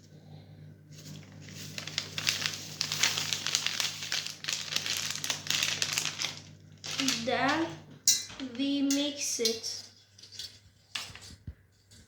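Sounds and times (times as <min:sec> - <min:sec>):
packet crinkling and rustling: 0:01.0 - 0:07.7.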